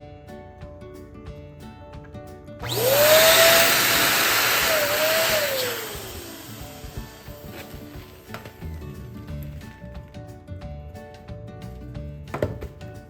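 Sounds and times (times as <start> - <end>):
background music: 0.0 - 13.0
electric balloon inflator blowing air: 2.6 - 8.5.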